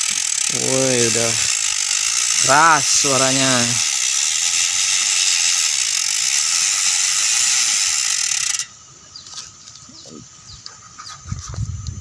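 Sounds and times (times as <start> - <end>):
bicycle freehub clicking buzz: 0.0 - 8.9.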